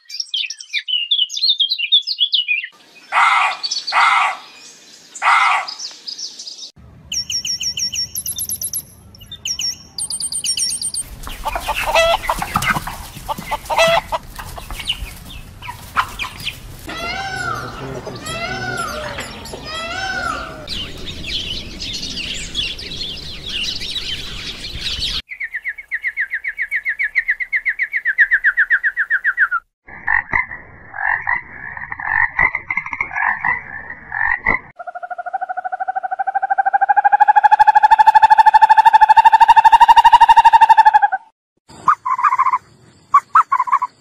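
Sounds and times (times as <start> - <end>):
frogs chirping: 8.5 - 19.8, 41.7 - 44.0
frogs croaking: 11.0 - 21.3, 29.9 - 40.6, 41.7 - 44.0.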